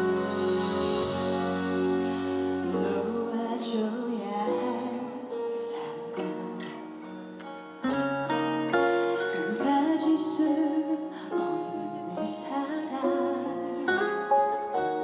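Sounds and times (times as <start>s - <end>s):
sustained chords: 0.0s - 4.2s
plucked guitar: 0.0s - 15.0s.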